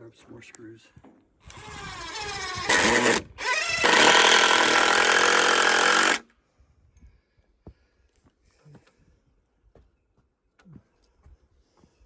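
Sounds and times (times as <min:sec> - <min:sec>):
power screwdriver motor whining: 0:01.5 - 0:06.2.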